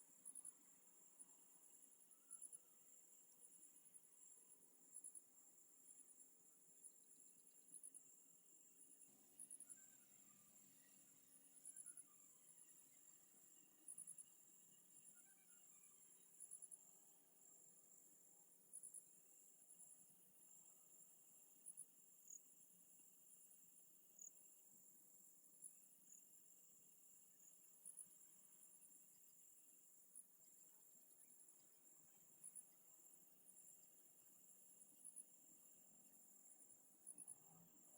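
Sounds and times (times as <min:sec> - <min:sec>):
crickets chirping: 0:00.0 - 0:37.9
high-pitched insect trill: 0:00.1 - 0:06.2, 0:06.8 - 0:18.1.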